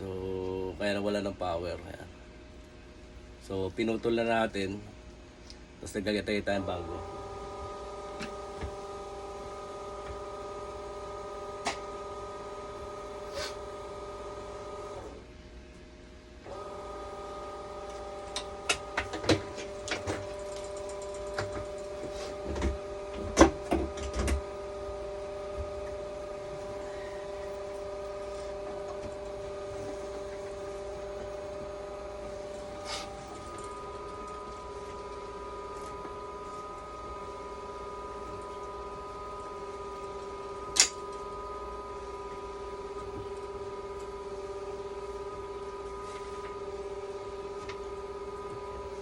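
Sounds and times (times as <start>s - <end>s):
steady electrical hum: 0.0s - 49.0s
clicks and knocks of tool work: 17.9s - 24.4s, 40.7s - 41.3s.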